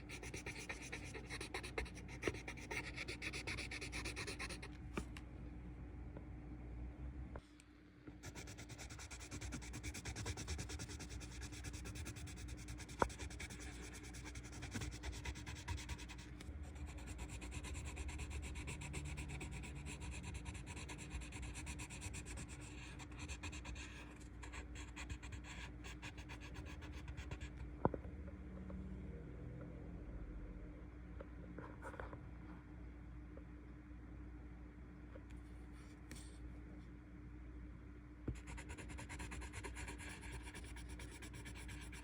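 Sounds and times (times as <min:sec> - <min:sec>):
colored pencil shading on paper: 0:00.0 - 0:04.7, 0:08.2 - 0:27.4, 0:38.3 - 0:42.0.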